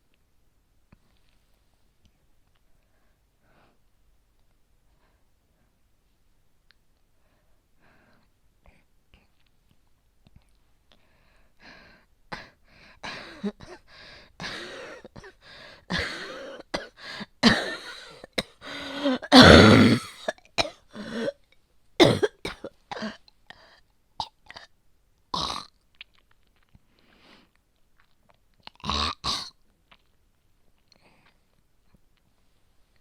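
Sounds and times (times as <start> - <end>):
woman coughing phlegmy: 14.4 - 21.4, 22.0 - 23.2
woman clearing throat: 14.5 - 21.4, 22.0 - 23.2.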